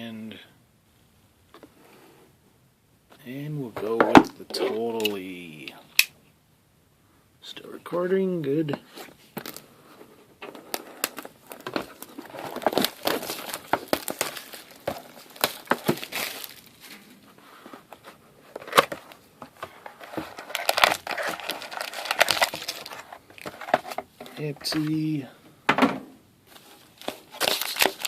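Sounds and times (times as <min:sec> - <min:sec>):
wrapping crinkling and tearing: 0:10.6 - 0:17.1, 0:19.8 - 0:24.0, 0:26.5 - 0:28.0.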